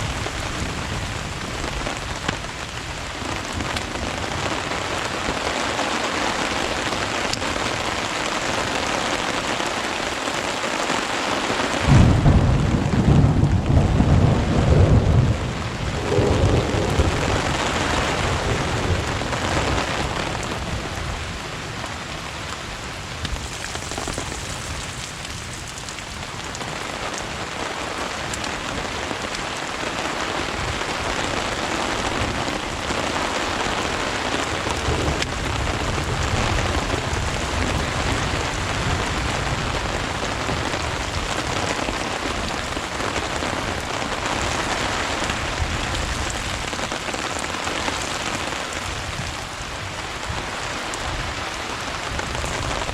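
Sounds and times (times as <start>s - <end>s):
thunderclap rumbling: 0.0s - 5.4s, 11.7s - 21.7s, 30.5s - 48.0s
steady rain: 0.0s - 52.9s.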